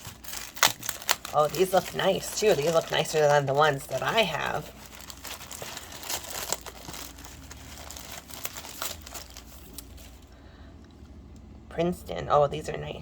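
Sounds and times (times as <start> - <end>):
packaging crinkling and rustling: 0.0 - 10.4.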